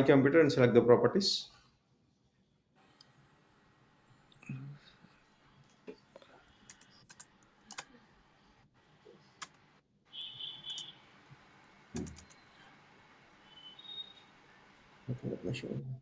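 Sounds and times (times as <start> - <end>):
keyboard and mouse clicks: 5.8 - 7.9, 9.4 - 9.6, 10.7 - 10.9, 11.9 - 12.6.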